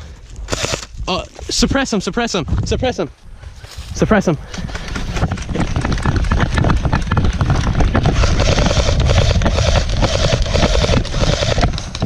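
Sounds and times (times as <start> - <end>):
wind rumble on microphone: 0.0 - 12.0
airsoft guns firing: 8.1 - 11.9.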